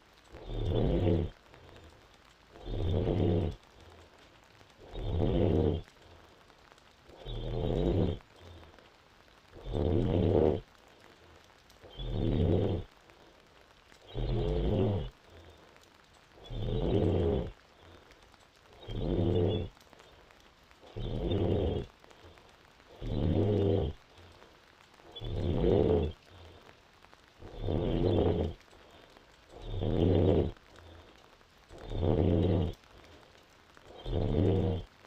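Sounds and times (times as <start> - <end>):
quiet breaths: 0.0 - 35.0
woman snoring: 0.4 - 1.3, 2.6 - 3.6, 4.8 - 5.9, 7.2 - 8.2, 9.6 - 10.6, 11.9 - 12.9, 14.1 - 15.1, 16.4 - 17.5, 20.9 - 21.9, 22.9 - 24.0, 25.1 - 26.2, 27.4 - 28.6, 29.5 - 30.6, 31.7 - 32.8, 33.9 - 34.9.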